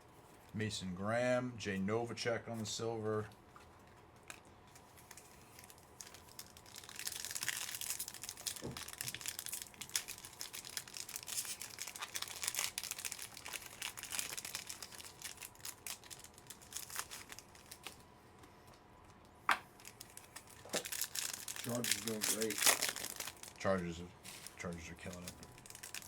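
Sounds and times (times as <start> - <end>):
card wrappers crinkling and tearing: 4.2 - 18.1, 19.1 - 26.0.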